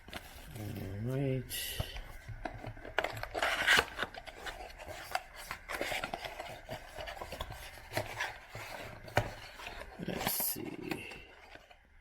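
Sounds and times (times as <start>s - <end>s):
cardboard rubbing and scraping: 2.2s - 10.4s.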